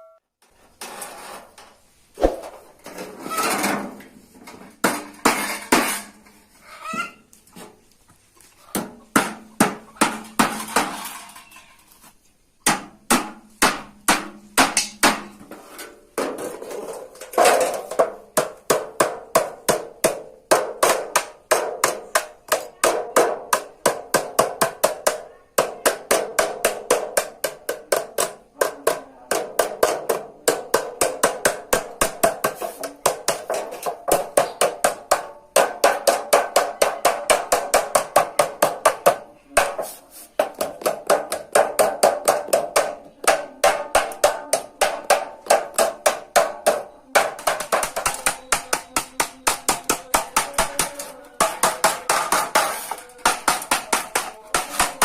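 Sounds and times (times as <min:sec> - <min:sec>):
hammer ringing on sheet metal: 0:43.6 - 0:55.0.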